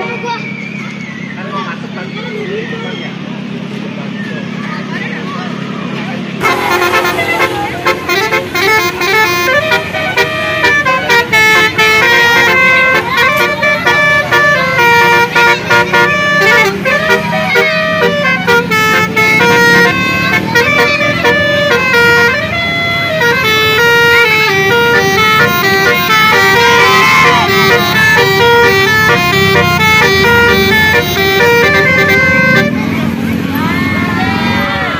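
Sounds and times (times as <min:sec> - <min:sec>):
musical vehicle horn playing tune: 0:06.4 - 0:32.8.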